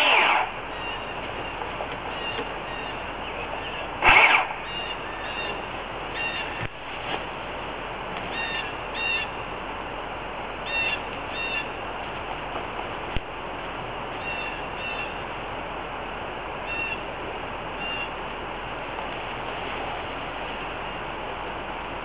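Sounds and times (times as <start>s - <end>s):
steady outdoor hiss: 0.0s - 22.0s
bird chirping: 0.7s - 6.6s, 8.3s - 9.4s, 10.7s - 11.8s, 14.2s - 15.2s, 16.7s - 17.0s, 17.8s - 18.1s
brief loud noise: 4.0s - 4.6s.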